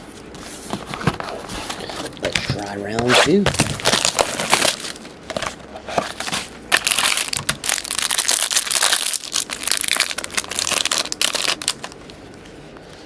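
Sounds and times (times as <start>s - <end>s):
plastic wrap crinkling and tearing: 3.0s - 12.2s.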